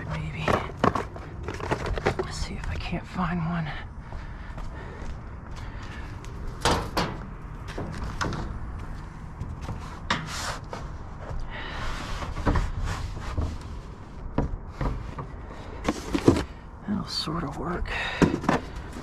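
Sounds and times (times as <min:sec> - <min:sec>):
knocks and clunks of items: 0:00.0 - 0:02.6, 0:14.3 - 0:16.6, 0:18.0 - 0:19.0
scraping rustle: 0:11.9 - 0:16.6.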